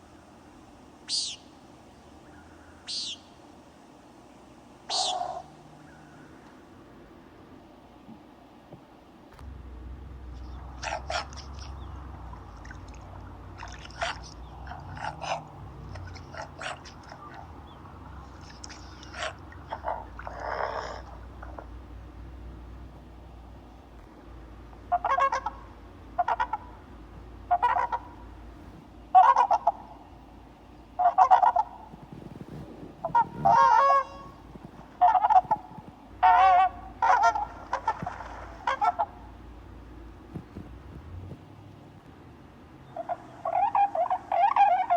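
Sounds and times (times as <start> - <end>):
low background hum: 0.0 - 44.9
bird giving short harsh calls: 4.9 - 6.2
goose honking: 10.2 - 21.8, 24.9 - 26.8, 27.5 - 28.4, 29.1 - 29.9, 31.0 - 31.9, 33.0 - 39.4, 43.0 - 44.9.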